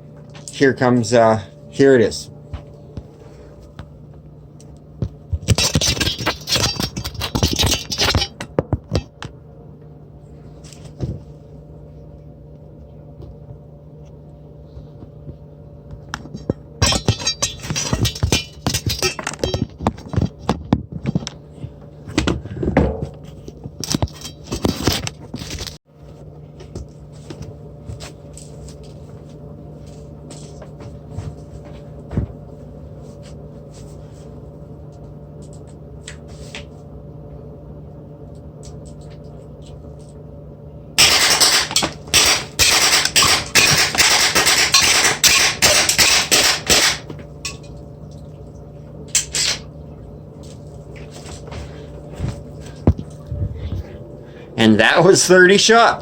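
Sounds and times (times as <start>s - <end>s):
bb gun shots: 41.0s - 47.0s.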